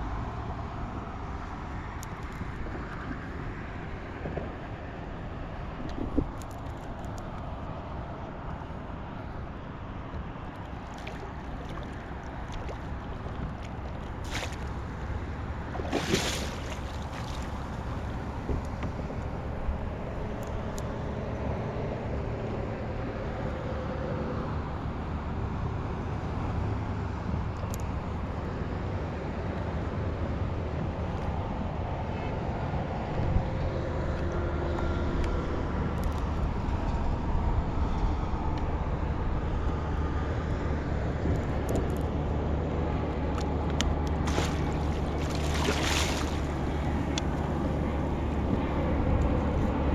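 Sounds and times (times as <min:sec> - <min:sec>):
water around kayak: 0:00.0 - 0:49.9
wind on microphone: 0:02.3 - 0:07.2.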